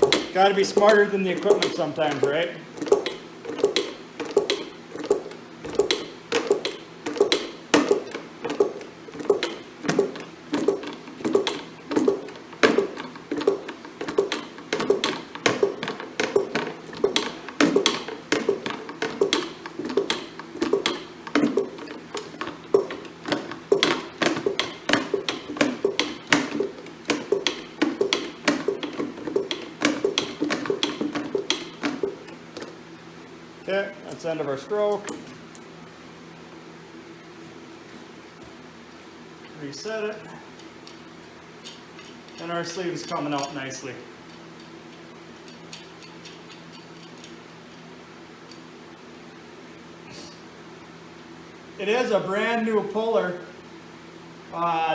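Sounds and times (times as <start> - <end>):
hand pump clicking and clacking: 0.0 - 32.7.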